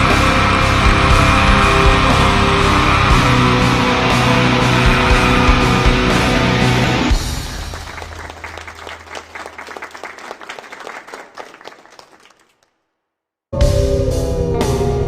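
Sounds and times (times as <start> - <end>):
heavy metal music: 0.0 - 8.1, 13.6 - 15.0
clapping applause: 4.0 - 12.8.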